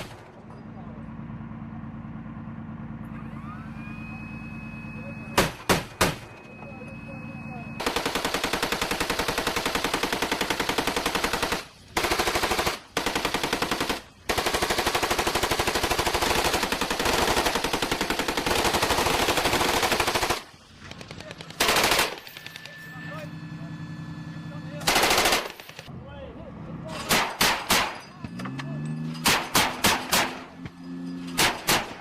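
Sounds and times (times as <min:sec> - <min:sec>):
automatic gun firing bursts: 0:07.8 - 0:22.6, 0:24.8 - 0:25.9, 0:29.3 - 0:30.4, 0:31.4 - 0:32.0.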